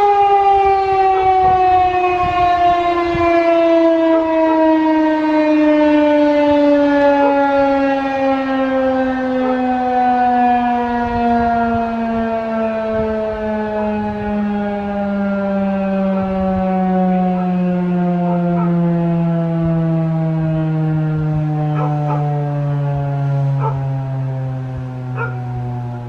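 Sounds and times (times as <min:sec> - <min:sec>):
warning siren winding down: 0:00.0 - 0:26.0.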